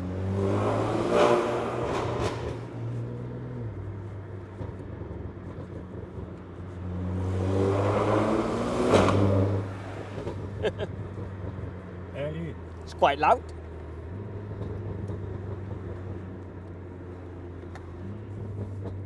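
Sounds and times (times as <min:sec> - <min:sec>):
car engine accelerating: 0:00.0 - 0:12.8, 0:13.5 - 0:19.0
exhaust crack: 0:00.5 - 0:03.0.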